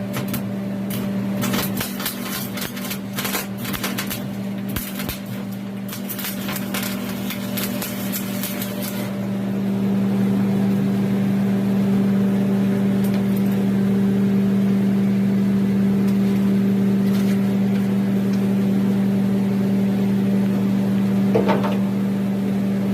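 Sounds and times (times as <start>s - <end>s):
arc welding crackle: 0.0s - 9.4s, 12.9s - 13.8s, 16.0s - 18.6s
electrical machine hum: 0.0s - 22.9s.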